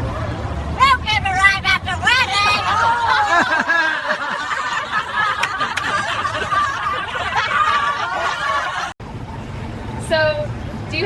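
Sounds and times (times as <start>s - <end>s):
group of people laughing: 2.6s - 9.0s.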